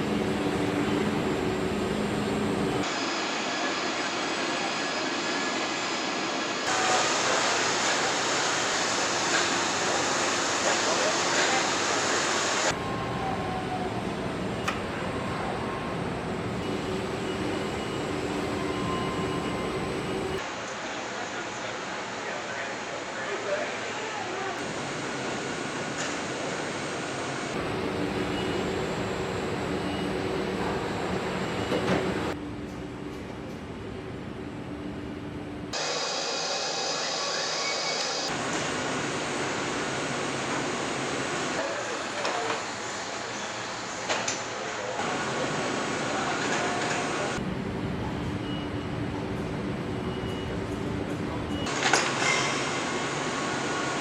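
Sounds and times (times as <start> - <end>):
assembly line machinery hiss and hum: 0.0 - 12.8, 35.7 - 47.4
machinery hum: 0.0 - 54.0.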